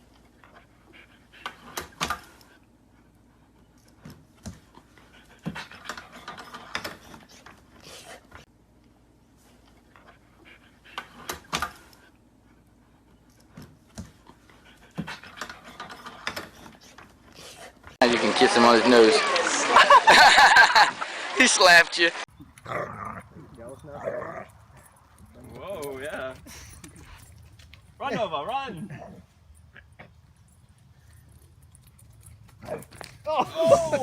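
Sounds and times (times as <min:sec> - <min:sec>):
animal sniffing breaths: 0:00.3 - 0:08.5, 0:09.4 - 0:18.0, 0:26.4 - 0:27.5.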